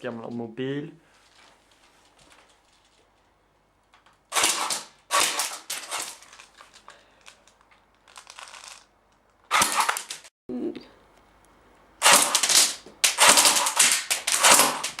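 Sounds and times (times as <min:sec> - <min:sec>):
airsoft gun rattling shots: 0:04.3 - 0:06.5, 0:09.5 - 0:10.3, 0:12.0 - 0:15.0.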